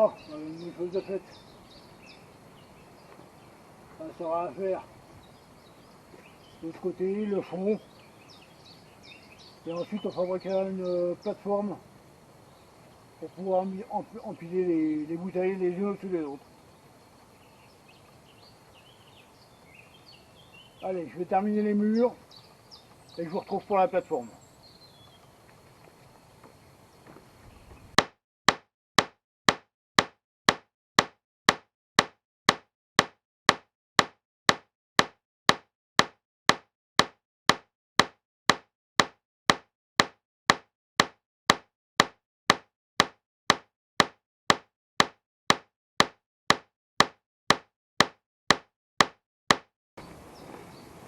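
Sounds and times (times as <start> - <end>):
faint outdoor background: 0.0 - 28.2, 50.0 - 51.0
rhythmic sharp knocks: 28.0 - 49.7.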